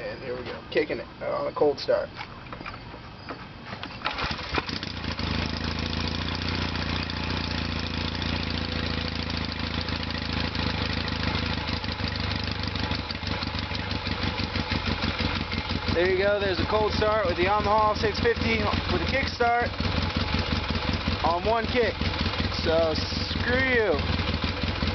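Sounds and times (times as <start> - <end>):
motorcycle engine kick-start: 3.8 - 8.4
motorcycle engine idling: 4.1 - 24.9.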